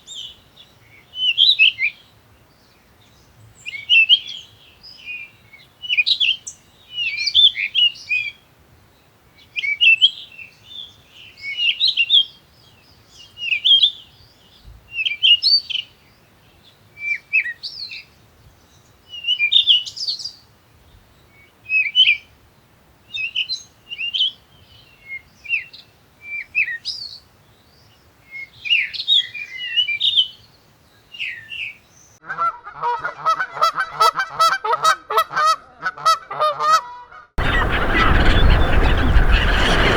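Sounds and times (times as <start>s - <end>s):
songbird chirping: 23.1s - 32.2s, 37.4s - 39.9s
geese honking: 32.2s - 39.9s.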